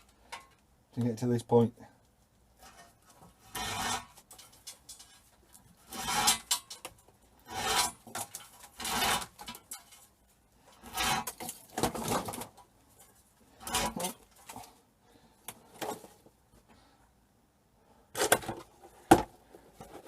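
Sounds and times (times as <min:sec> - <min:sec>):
cable sheath scraping: 0:02.6 - 0:14.8.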